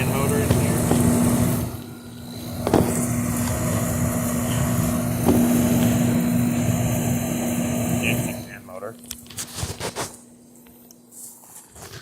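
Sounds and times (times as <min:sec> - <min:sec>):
window air conditioner humming: 0:00.0 - 0:12.0.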